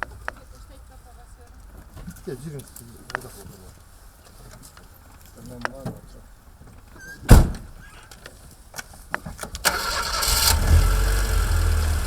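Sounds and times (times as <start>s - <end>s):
loud thump: 7.3s - 7.8s
car engine starting and idling: 9.5s - 12.0s.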